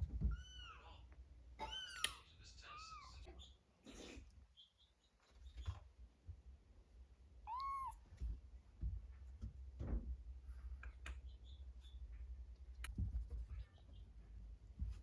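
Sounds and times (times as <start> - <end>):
kitten mewing: 7.5 - 8.0.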